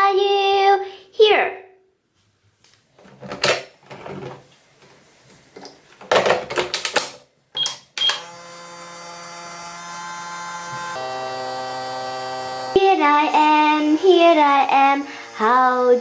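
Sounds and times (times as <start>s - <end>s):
clattering and clunks: 3.0s - 4.5s
keypad beeps: 7.6s - 8.2s
microwave oven humming: 8.0s - 16.0s.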